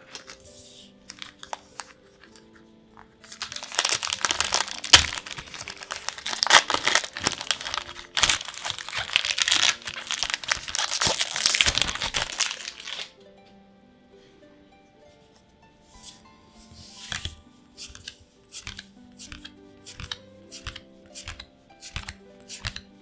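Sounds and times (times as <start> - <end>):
foil wrapper crinkling and tearing: 0.0 - 2.5, 3.2 - 13.1.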